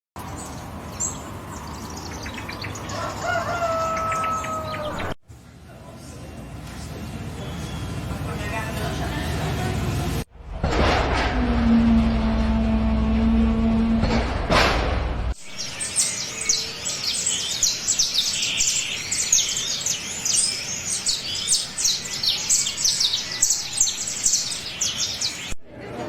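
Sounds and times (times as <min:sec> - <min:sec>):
small birds chirping: 0:00.2 - 0:05.2, 0:15.4 - 0:25.6
low rumble: 0:10.2 - 0:15.4.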